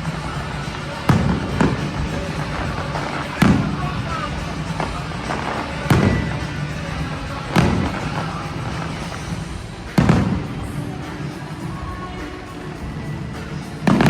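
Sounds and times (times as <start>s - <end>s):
fireworks booming: 0.0s - 11.9s
music playing: 0.0s - 14.0s.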